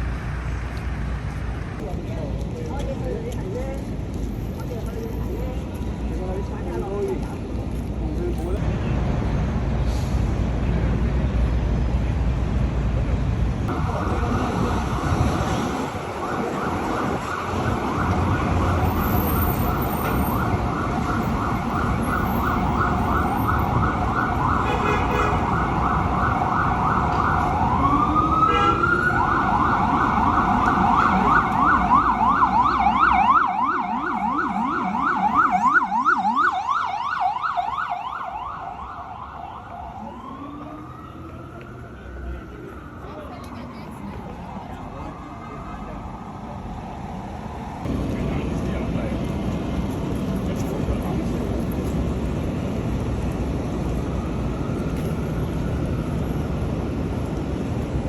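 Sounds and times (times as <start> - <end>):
low street traffic: 0.0 - 58.0
emergency siren yelp and wail: 13.7 - 48.1, 50.6 - 58.0.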